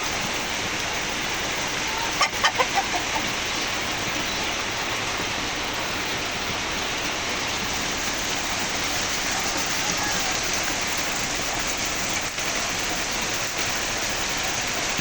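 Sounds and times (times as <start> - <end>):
steady rain: 0.0 - 15.0
chicken clucking: 1.8 - 3.4, 9.3 - 10.5.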